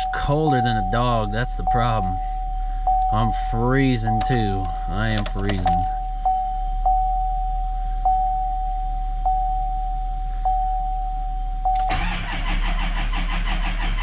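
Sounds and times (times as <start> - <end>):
diesel engine cranking: 4.0 - 6.2, 11.8 - 14.0.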